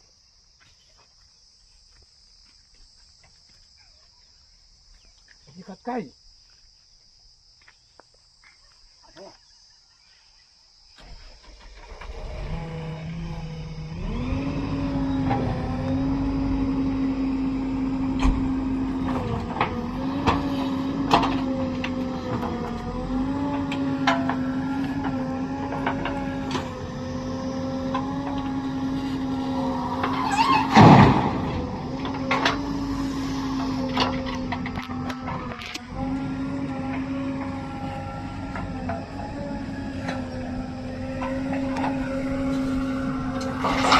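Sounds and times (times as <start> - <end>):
heavy diesel engine running: 11.2 - 43.9
loud metallic clank: 29.9 - 32.8.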